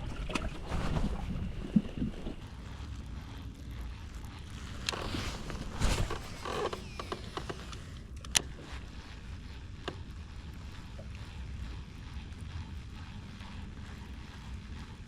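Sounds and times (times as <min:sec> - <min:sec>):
low rumble: 0:00.0 - 0:02.7.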